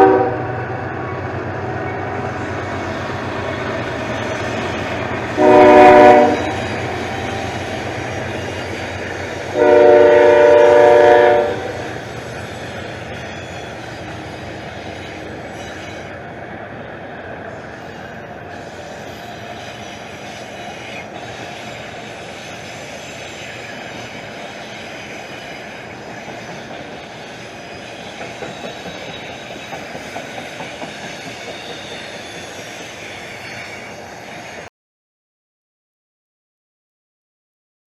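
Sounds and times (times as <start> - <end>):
locomotive horn: 0.0 - 0.8, 5.2 - 12.0
train rumble and wheel clatter: 0.0 - 34.7.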